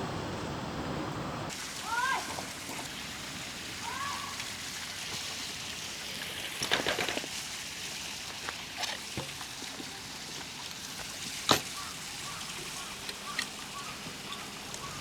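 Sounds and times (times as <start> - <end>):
running water hiss: 0.0 - 15.0.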